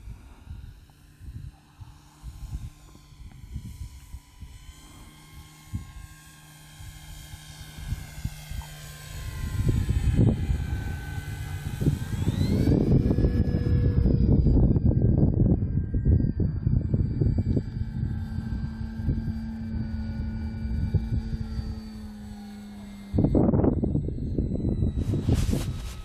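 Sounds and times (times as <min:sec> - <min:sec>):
model plane motor whining: 0:00.0 - 0:26.0
wind buffeting microphone: 0:00.0 - 0:26.0.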